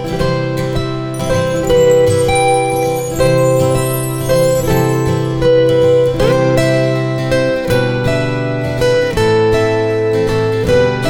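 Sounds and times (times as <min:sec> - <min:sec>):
sustained chord: 0:01.2 - 0:05.8.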